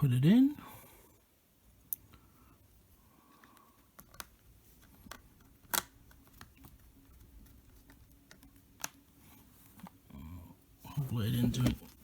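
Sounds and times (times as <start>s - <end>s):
laptop parts clicking and tapping: 3.3s - 9.1s.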